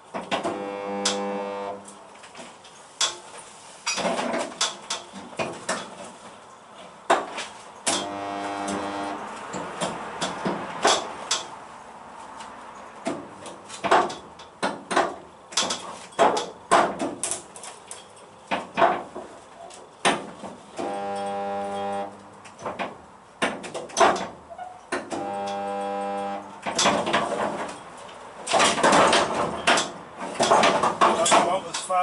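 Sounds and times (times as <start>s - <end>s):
electric buzz: 0.4s - 2.0s, 7.9s - 9.3s, 20.8s - 22.4s, 25.1s - 26.7s.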